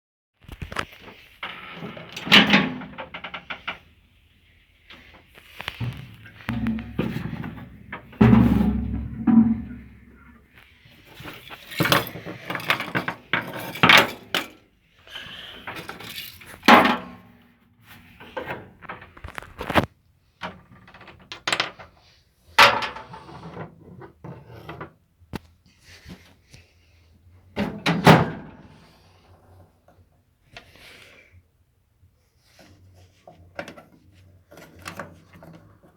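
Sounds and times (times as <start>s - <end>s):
irregular thuds and knocks: 5.8s - 10.6s.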